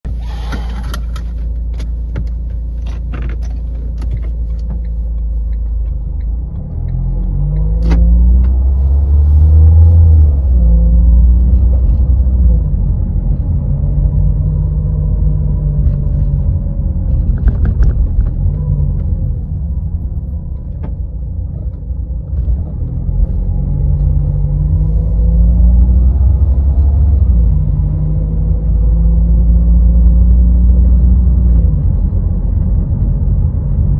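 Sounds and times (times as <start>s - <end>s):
car engine and road rumble: 0.0s - 33.9s.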